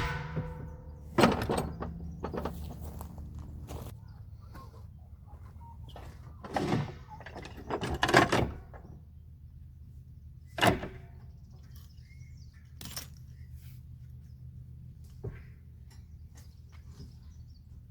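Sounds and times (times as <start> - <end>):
knocking and scraping: 0.0 - 3.9
steady low hum: 0.0 - 3.9.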